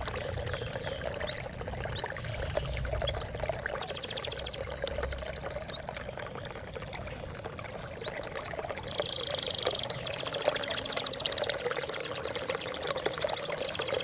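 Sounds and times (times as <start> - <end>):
water trickling and splashing: 0.0 - 14.0
songbird whistling and trilling: 3.0 - 4.6, 8.0 - 14.0.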